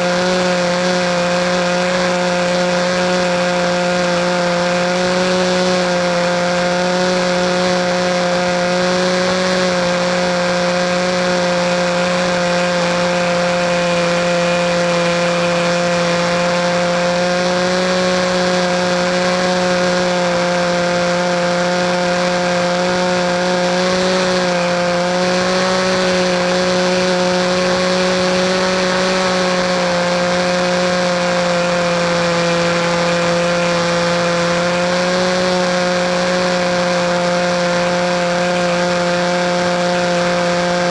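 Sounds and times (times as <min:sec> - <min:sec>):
model airplane engine running: 0:00.0 - 0:40.9.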